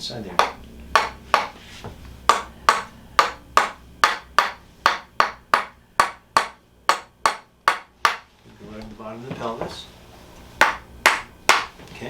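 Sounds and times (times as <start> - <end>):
hammer tapping sharp knocks: 0.3 - 1.6, 2.3 - 8.3, 10.6 - 11.8.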